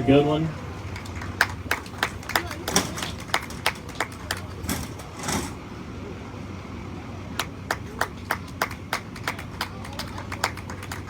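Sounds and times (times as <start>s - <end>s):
hand clapping: 0.6s - 5.4s, 7.4s - 11.0s.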